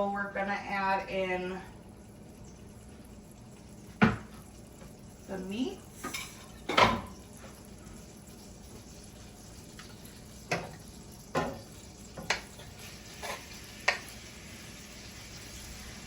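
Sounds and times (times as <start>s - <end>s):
food sizzling in a pan: 0.0s - 16.0s
food and utensil hitting pan: 6.0s - 7.2s, 10.5s - 12.6s, 13.2s - 14.1s.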